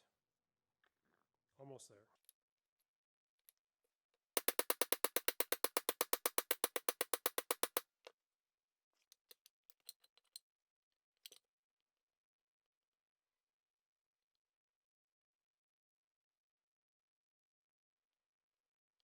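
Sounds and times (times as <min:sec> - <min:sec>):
rapid hammer strikes on pipe: 0:04.4 - 0:07.8.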